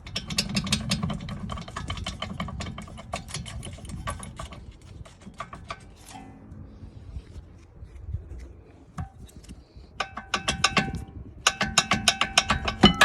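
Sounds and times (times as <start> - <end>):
small motor rattling and clicking: 0.0 - 6.1.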